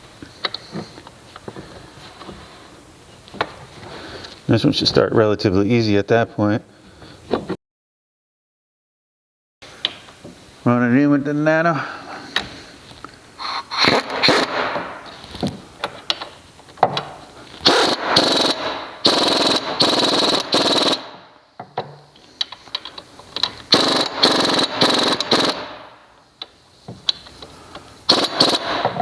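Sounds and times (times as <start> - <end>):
impact wrench hammering: 13.8 - 15.1, 16.8 - 21.7, 23.4 - 25.9, 28.1 - 29.0.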